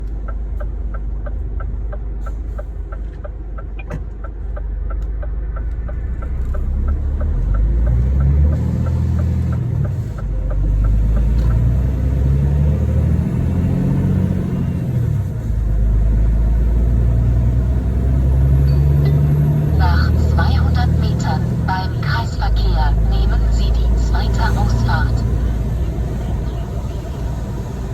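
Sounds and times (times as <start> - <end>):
steady ticking: 0.0 - 11.8
truck diesel engine revving: 6.1 - 27.9.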